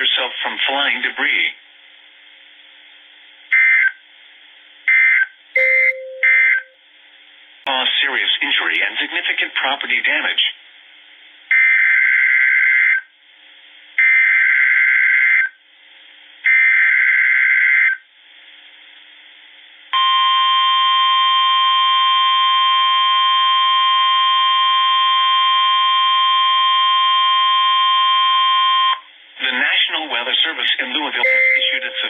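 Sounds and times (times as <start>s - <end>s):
faint radio hiss: 0.0s - 5.9s, 6.8s - 11.5s, 13.1s - 14.0s, 15.6s - 16.4s, 18.1s - 19.9s, 29.0s - 32.0s
steady alarm tone: 5.0s - 6.8s, 31.2s - 32.0s.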